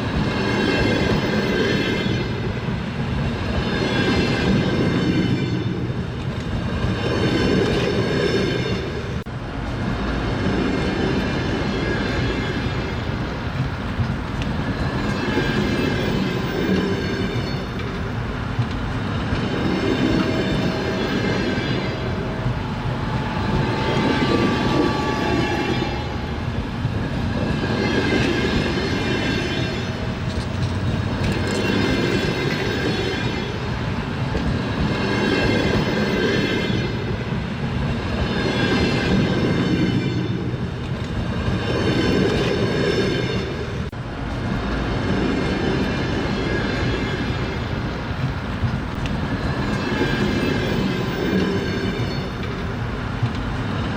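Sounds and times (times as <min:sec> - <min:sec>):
train wheels clattering on rails: 0:00.0 - 0:53.9.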